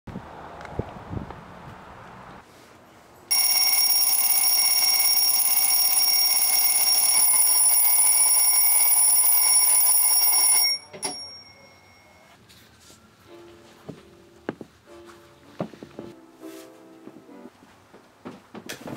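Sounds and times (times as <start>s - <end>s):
alarm clock ringing: 3.3s - 12.3s.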